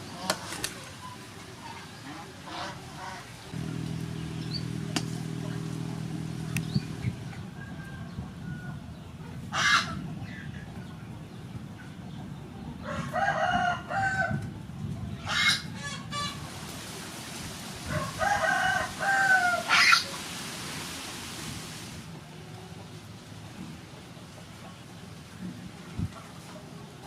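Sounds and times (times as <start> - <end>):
low steady hum: 3.5 - 8.2
rooster crowing: 7.1 - 8.9, 12.8 - 14.4, 17.8 - 20.0.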